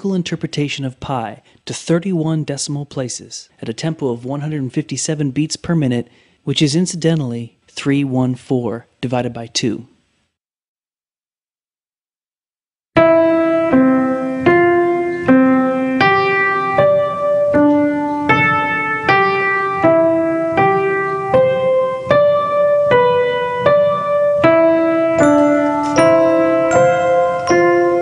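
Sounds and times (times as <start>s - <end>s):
piano melody with chords: 13.0s - 28.0s.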